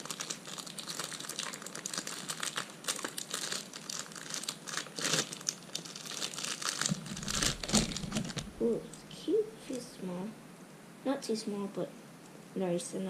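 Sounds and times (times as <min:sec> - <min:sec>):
plastic wrapper crinkling: 0:00.0 - 0:08.6.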